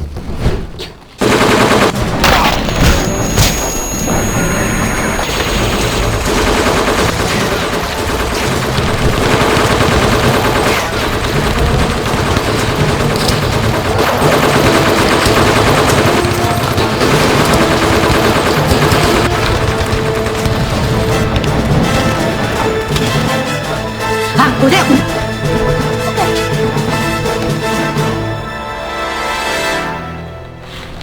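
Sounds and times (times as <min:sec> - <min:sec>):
rapid automatic gunfire: 0:01.2 - 0:23.9.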